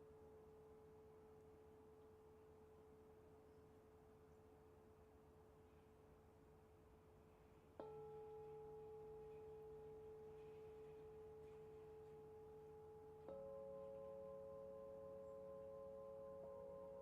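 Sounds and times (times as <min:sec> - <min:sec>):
bell-like meditation tones: 0:07.7 - 0:17.0.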